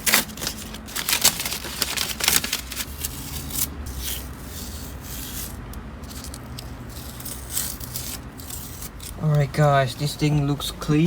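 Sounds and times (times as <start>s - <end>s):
low steady hum: 0.0s - 11.0s
light rubbing and scratching: 2.8s - 10.4s.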